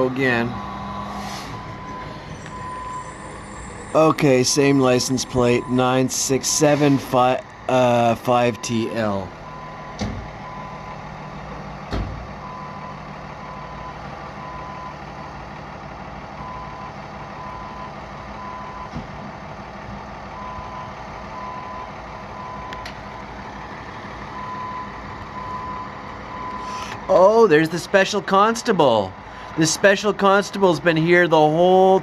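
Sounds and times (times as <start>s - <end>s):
engine idling: 0.0s - 32.0s
short electronic beeps: 0.5s - 6.1s.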